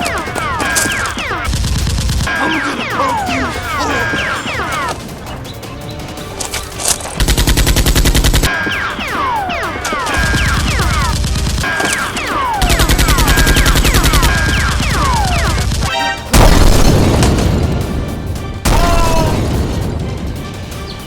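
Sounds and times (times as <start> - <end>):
machine-gun fire: 1.4 - 2.7, 7.2 - 8.5, 10.2 - 17.9
explosion boom: 16.4 - 18.0.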